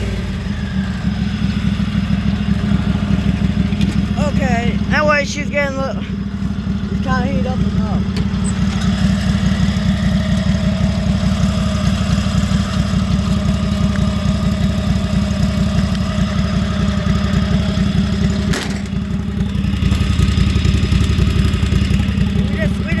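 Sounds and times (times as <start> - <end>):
lawn mower engine idling: 0.0 - 23.0.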